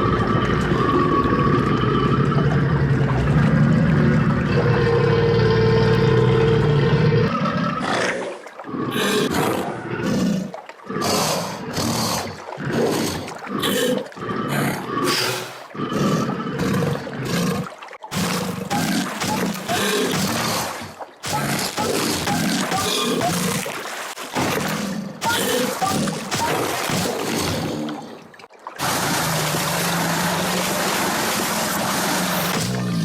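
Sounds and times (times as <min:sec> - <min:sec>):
roars and hisses bursts: 0:15.0 - 0:15.7, 0:28.8 - 0:33.0
loud steady growling: 0:28.8 - 0:33.0.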